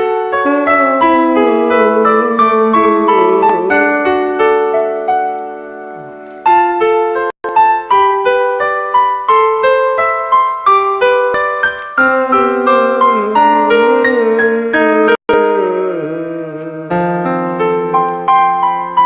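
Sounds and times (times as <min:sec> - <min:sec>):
electronic keyboard melody: 0:00.0 - 0:19.0
sliding bent notes: 0:00.4 - 0:04.5, 0:12.0 - 0:17.0.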